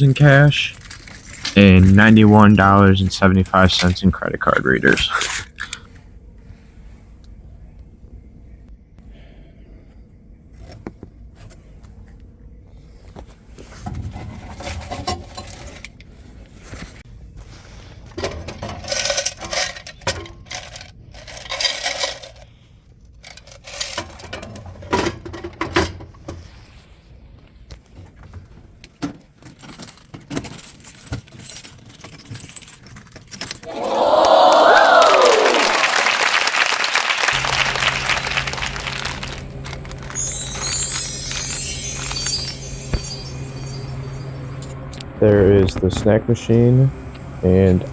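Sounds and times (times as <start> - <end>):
coins clinking and rattling: 0.0 - 4.2, 18.1 - 26.1, 29.4 - 33.7, 37.3 - 44.9
applause: 33.7 - 40.8
music: 37.4 - 43.3.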